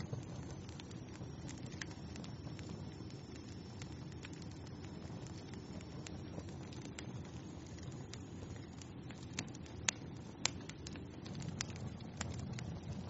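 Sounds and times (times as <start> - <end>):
fire crackling: 0.0 - 13.0
sharp pops and snaps of fire: 0.0 - 13.0.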